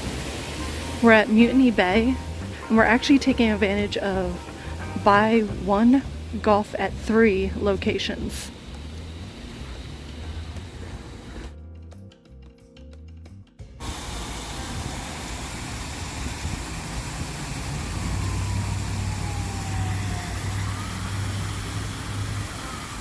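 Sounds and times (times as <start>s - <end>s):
hissing rush of outdoor noise: 0.0s - 11.5s, 13.8s - 23.0s
low steady hum: 0.0s - 11.7s
music: 0.0s - 17.6s.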